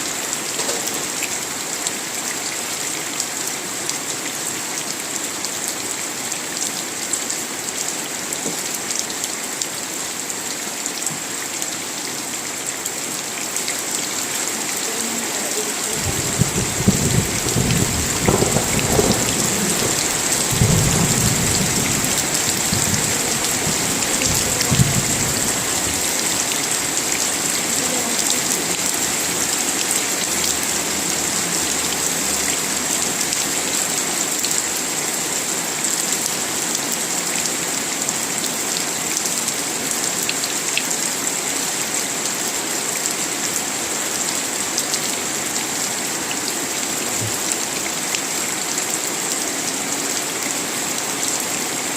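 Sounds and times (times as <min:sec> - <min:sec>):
heavy rain: 0:00.0 - 0:51.9
low rolling thunder: 0:16.0 - 0:26.1.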